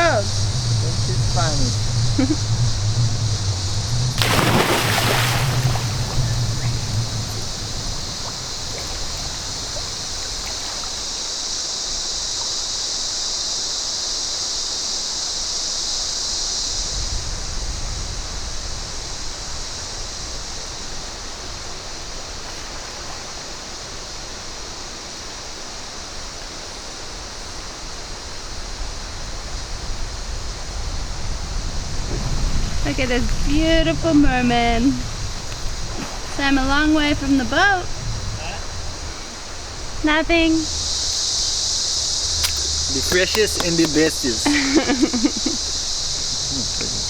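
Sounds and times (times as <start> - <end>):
low rumble: 0.0 - 10.2
creek water flowing and splashing: 0.0 - 15.6, 19.8 - 47.0.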